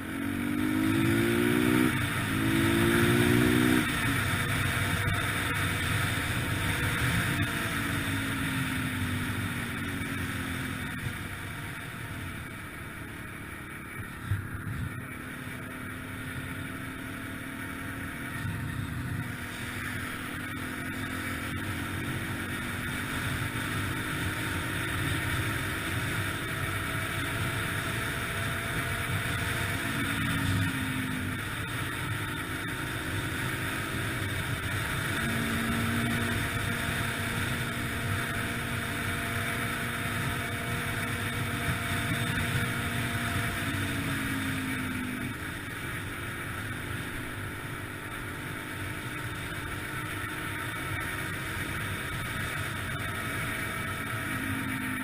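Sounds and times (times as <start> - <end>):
dirt bike engine revving: 0.0 - 8.1, 32.6 - 45.6
steady rushing noise: 0.0 - 55.0.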